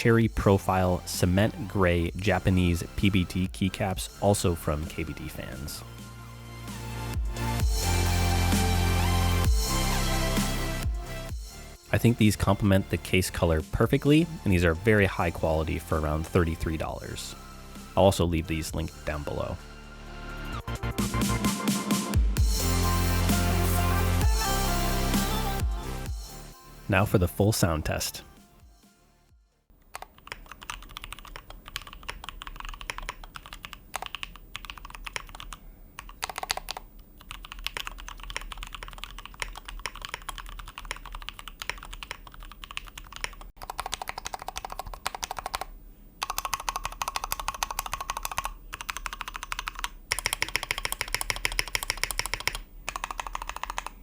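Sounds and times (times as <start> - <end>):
mechanical keyboard typing: 29.9 - 54.0.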